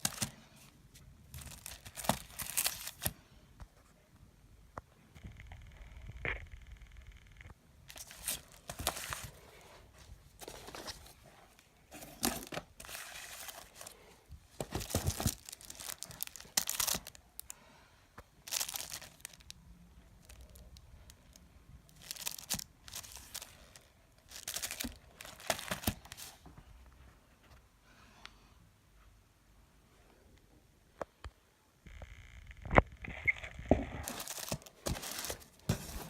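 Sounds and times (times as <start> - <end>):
packaging crinkling and tearing: 1.3 - 3.1, 14.7 - 17.5, 18.4 - 20.8, 21.9 - 26.3, 33.2 - 36.0.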